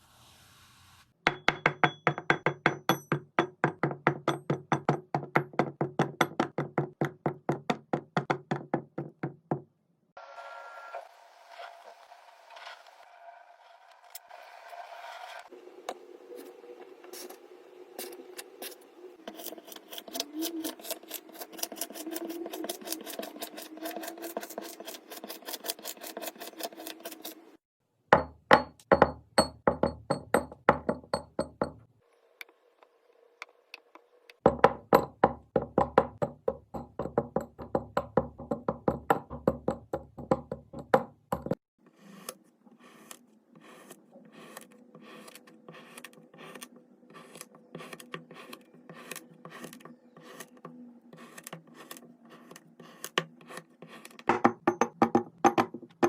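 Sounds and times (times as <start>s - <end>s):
knife slicing kinetic sand: 42.0s - 50.6s.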